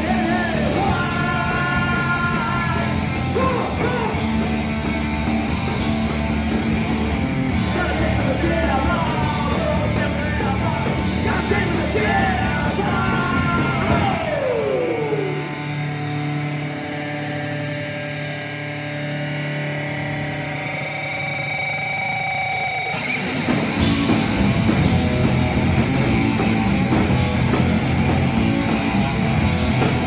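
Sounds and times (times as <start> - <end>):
person shouting lead vocal: 0.0 - 4.4
rock band playing: 0.0 - 30.0.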